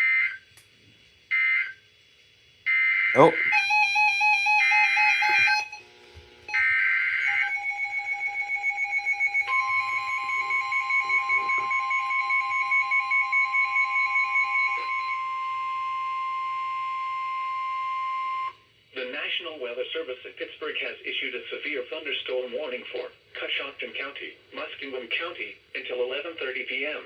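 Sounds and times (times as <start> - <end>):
steady warning alert tone: 3.1 - 5.8, 6.5 - 16.8
rapid pulsing beep: 7.2 - 15.2.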